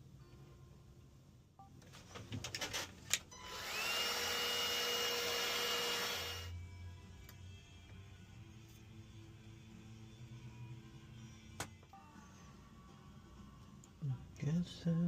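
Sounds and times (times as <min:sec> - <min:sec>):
small motorised tool whining: 0:03.4 - 0:06.5.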